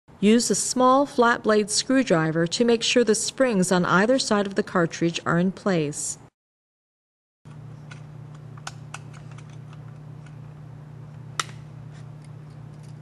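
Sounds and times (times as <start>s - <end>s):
steady low hum: 7.5s - 13.0s.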